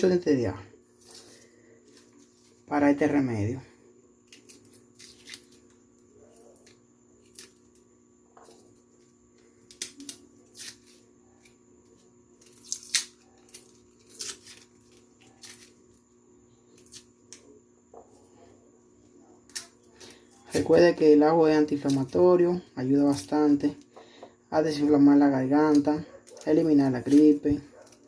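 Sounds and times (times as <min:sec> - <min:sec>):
steady low hum: 0:00.0 - 0:28.0
garlic skins crackling and tearing: 0:04.2 - 0:17.6, 0:19.4 - 0:20.8, 0:21.7 - 0:23.6, 0:25.5 - 0:28.0.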